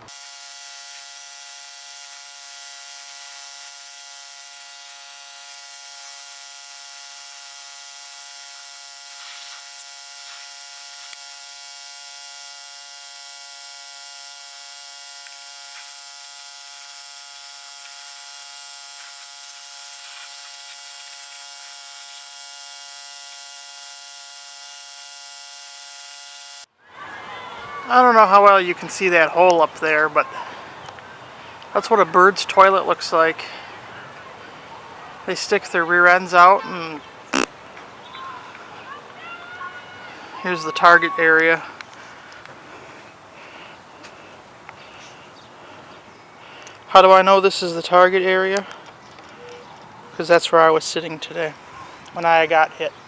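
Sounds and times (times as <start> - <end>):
small motor droning: 0.0 - 26.8.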